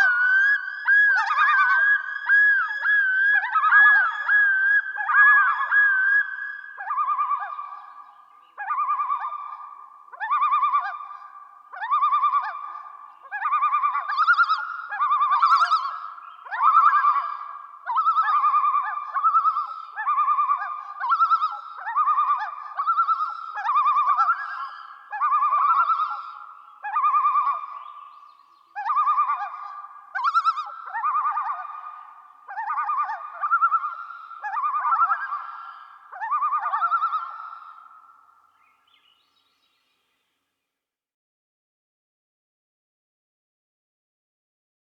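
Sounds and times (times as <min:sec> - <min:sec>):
loon calling: 0:11.8 - 0:38.1.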